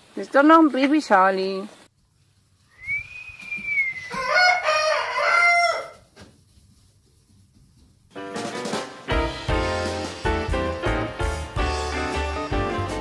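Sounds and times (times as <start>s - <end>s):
rooster crowing: 2.8s - 6.1s
music: 8.1s - 13.0s.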